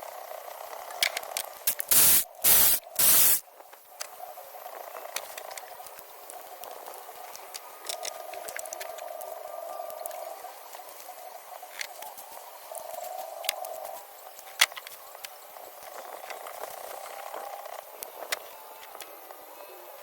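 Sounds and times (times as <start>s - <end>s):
loud hissing blasts: 1.7s - 3.4s.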